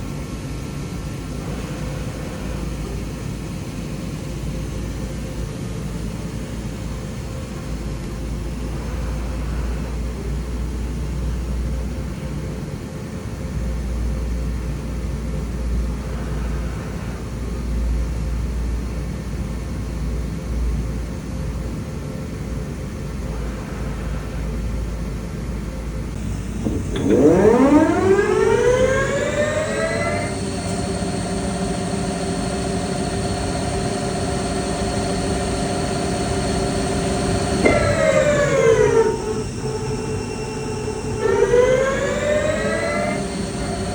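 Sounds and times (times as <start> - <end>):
spindle drive whine: 23.1 - 43.9
lathe machine hum: 26.0 - 43.9.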